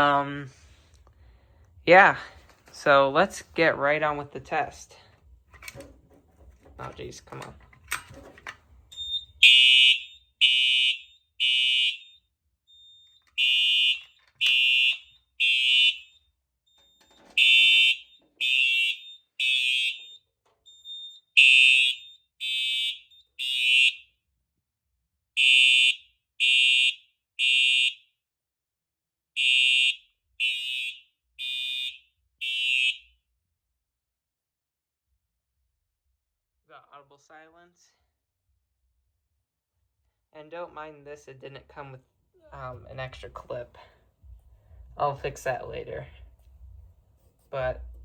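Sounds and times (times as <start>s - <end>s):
fire alarm horn blasts: 8.9s - 24.2s, 25.4s - 28.1s, 29.4s - 33.2s.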